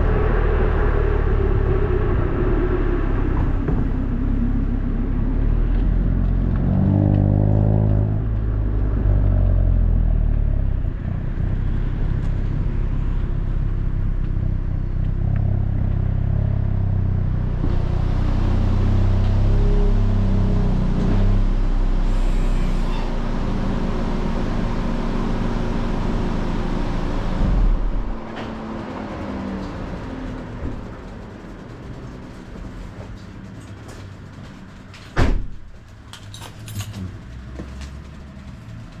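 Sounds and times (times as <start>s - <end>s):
car engine running: 0.0s - 20.0s, 21.0s - 39.0s
loud thump: 35.2s - 35.6s.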